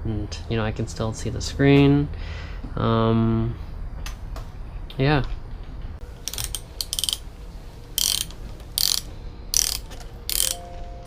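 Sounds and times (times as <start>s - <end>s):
ratchet wrench clicking: 6.2s - 7.3s, 8.0s - 10.6s.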